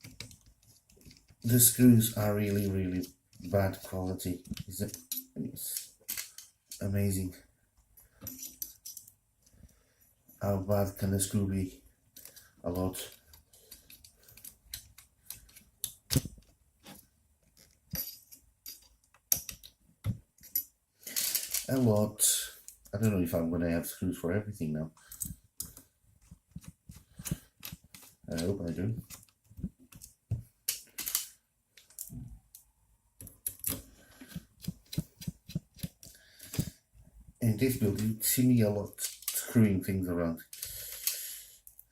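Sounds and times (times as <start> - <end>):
metal screws clinking: 8.0 - 9.1, 17.6 - 19.8, 20.4 - 21.8, 30.7 - 32.2.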